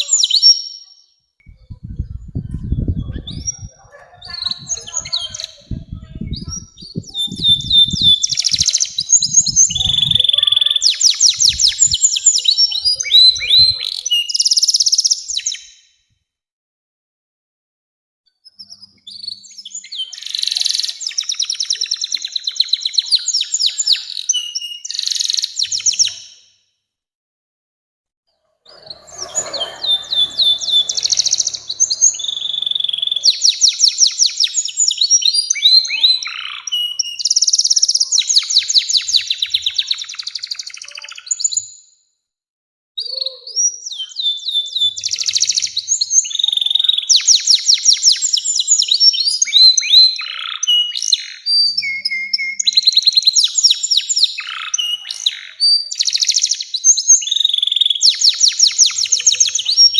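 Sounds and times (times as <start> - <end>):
canary singing trills: 0.0 - 15.7, 28.4 - 41.7.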